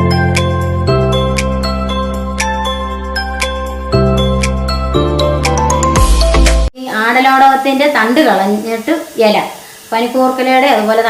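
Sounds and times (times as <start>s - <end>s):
background music with chords: 0.0s - 6.8s.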